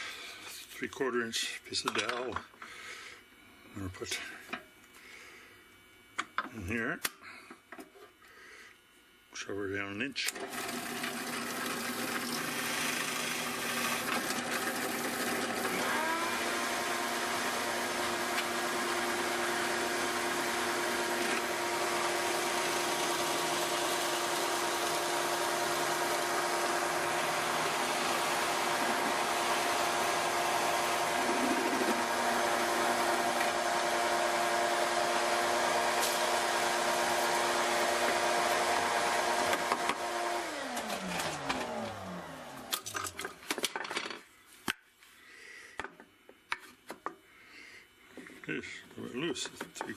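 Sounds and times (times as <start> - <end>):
drill press motor running: 10.3 - 43.0.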